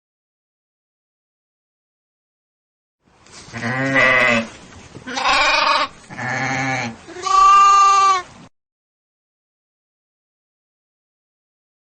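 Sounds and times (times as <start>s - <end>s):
farm animal bleating: 3.5s - 8.3s.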